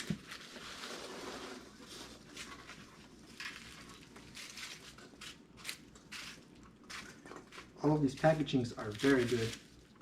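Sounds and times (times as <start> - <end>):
packing foam and cardboard rustling: 0.0 - 5.1, 8.6 - 9.8.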